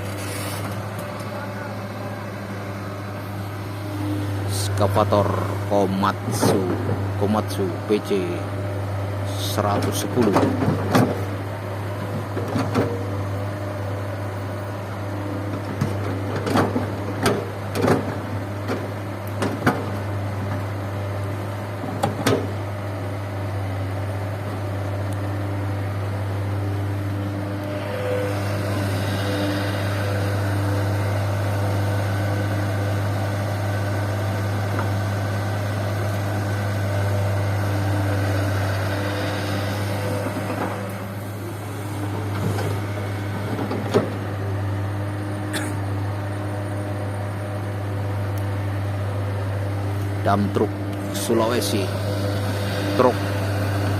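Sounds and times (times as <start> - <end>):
hydraulics hissing and whining: 0.0 - 8.6, 26.5 - 46.9, 48.1 - 53.9
diesel engine drone: 0.0 - 53.9.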